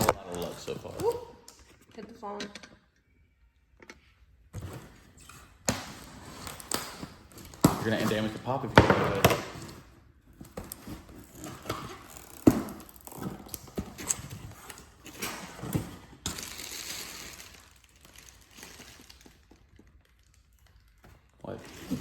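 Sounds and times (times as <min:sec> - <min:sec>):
cardboard boxes knocking: 0:07.4 - 0:09.8
packaging rustling: 0:10.3 - 0:22.0.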